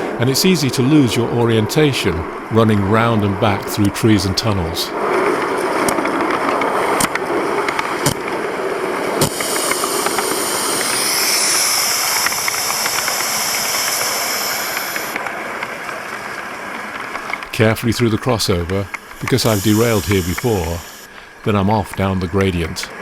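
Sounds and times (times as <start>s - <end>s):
steam locomotive running: 5.9s - 16.0s, 17.1s - 23.0s
high steam hiss: 7.8s - 15.5s, 17.2s - 23.0s
sharp clicks: 9.2s - 15.3s, 18.5s - 21.3s.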